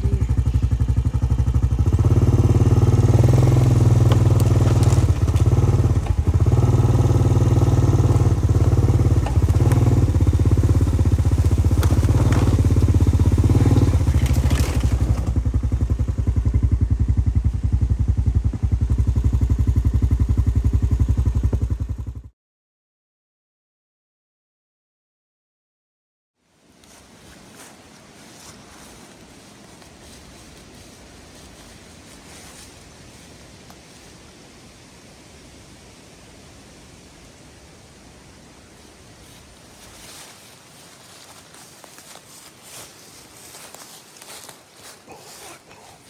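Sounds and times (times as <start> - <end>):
vehicle engine running: 0.0 - 22.3, 26.8 - 34.2, 38.6 - 46.0.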